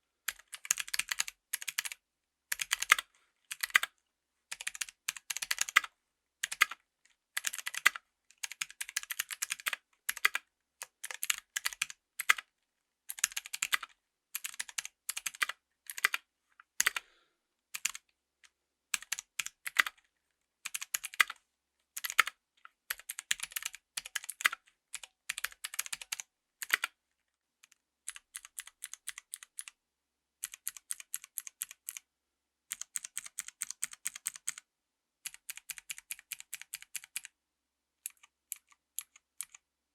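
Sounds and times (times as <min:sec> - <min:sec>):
clicky mechanical keyboard typing: 0:00.3 - 0:03.9, 0:04.5 - 0:06.8, 0:07.4 - 0:12.5, 0:13.1 - 0:16.2, 0:16.8 - 0:17.0, 0:17.8 - 0:18.1, 0:19.0 - 0:20.0, 0:20.7 - 0:21.4, 0:22.0 - 0:26.9, 0:27.6 - 0:29.8, 0:30.4 - 0:32.0, 0:32.7 - 0:34.6, 0:35.3 - 0:37.3, 0:38.0 - 0:39.6.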